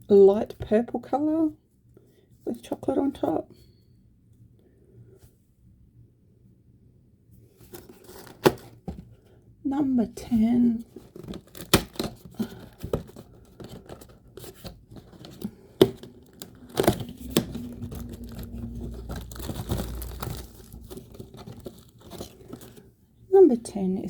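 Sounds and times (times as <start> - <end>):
packaging crinkling and rustling: 11.0 - 22.8.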